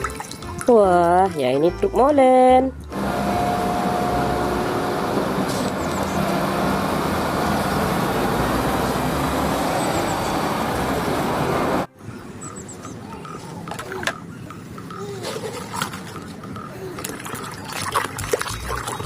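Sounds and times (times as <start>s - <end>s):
motor-like rumble: 2.8s - 11.9s.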